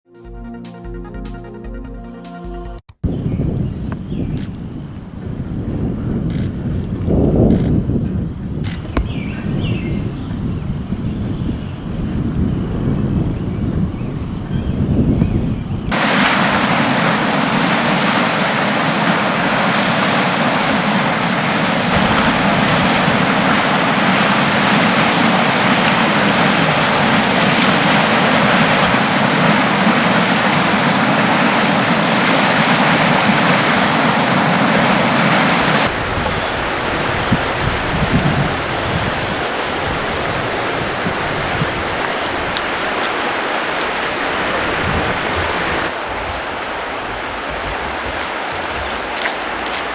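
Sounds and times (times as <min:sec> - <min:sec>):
floodwater rushing: 0:15.9 - 0:49.9.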